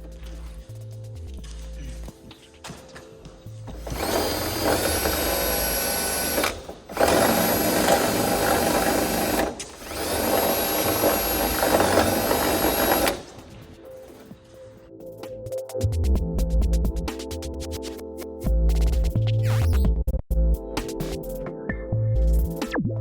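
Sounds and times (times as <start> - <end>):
power drill whining: 3.7 - 13.6.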